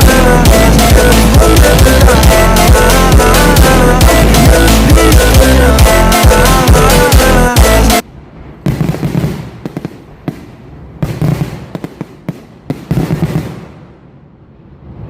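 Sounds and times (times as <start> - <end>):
loud music: 0.0 - 8.0
fireworks banging and crackling: 8.4 - 14.0.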